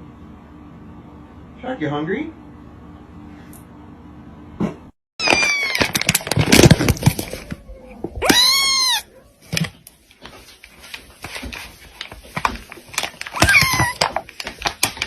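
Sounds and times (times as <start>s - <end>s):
cat meowing: 7.6s - 9.4s, 13.4s - 14.1s.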